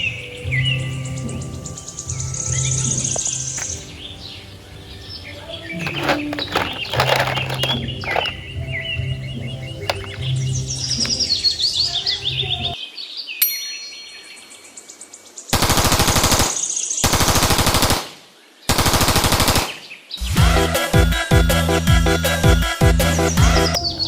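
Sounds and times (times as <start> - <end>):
background music: 0.0 - 12.8, 20.3 - 24.0
toy machine gun firing: 5.8 - 8.4.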